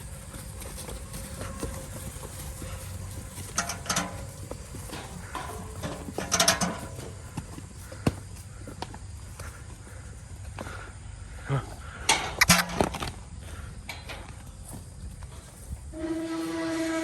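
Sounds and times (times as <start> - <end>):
gate banging: 3.5 - 7.4, 12.1 - 13.1.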